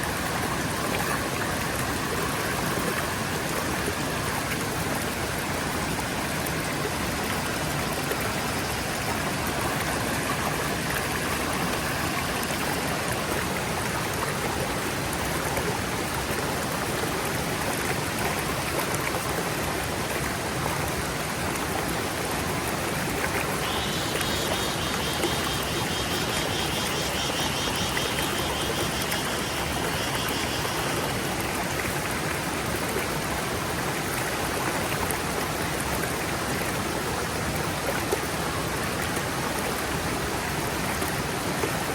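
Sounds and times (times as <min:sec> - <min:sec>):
stream running: 0:00.0 - 0:41.9
high rapidly pulsing sound: 0:23.6 - 0:31.1.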